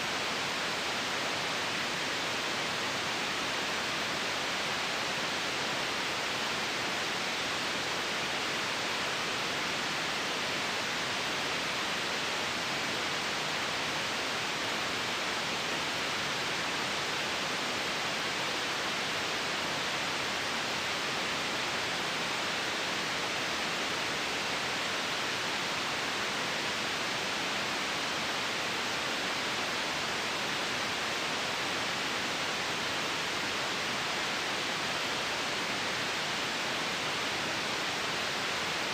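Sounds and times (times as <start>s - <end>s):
white noise hiss: 0.0s - 38.9s.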